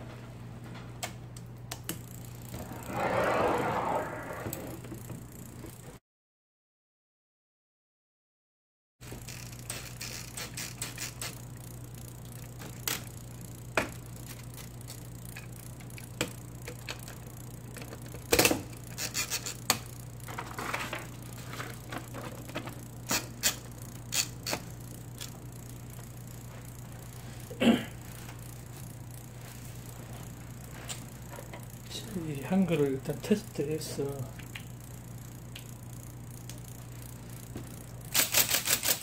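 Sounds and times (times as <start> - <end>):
typewriter motor humming: 9.0 - 39.0.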